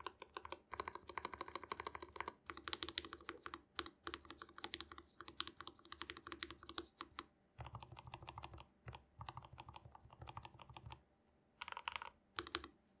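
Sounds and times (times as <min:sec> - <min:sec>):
mechanical keyboard typing: 0:00.0 - 0:11.0, 0:11.6 - 0:12.7.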